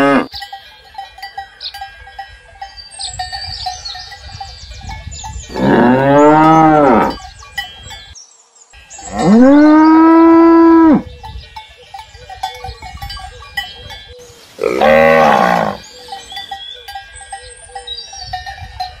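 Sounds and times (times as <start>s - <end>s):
cows mooing: 0.0s - 0.4s, 5.5s - 7.2s, 9.0s - 11.1s, 14.6s - 15.9s
faint bells clinking: 0.0s - 19.0s.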